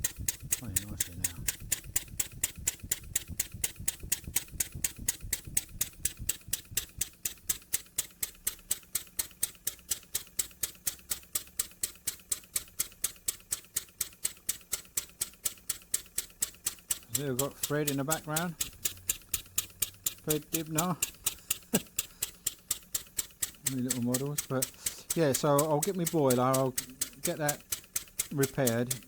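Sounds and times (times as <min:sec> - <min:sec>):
low hum: 0:00.0 - 0:06.8
model steam engine clicking: 0:00.0 - 0:29.0.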